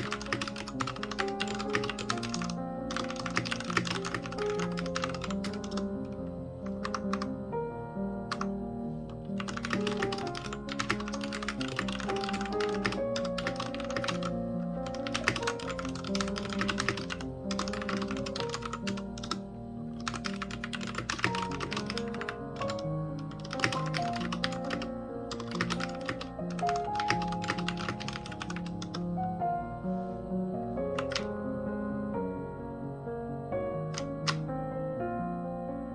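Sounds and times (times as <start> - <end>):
mechanical keyboard typing: 0.0 - 7.3, 8.3 - 8.5, 9.2 - 19.4, 20.0 - 29.0, 30.9 - 31.3, 33.9 - 34.4
background music: 0.0 - 35.9.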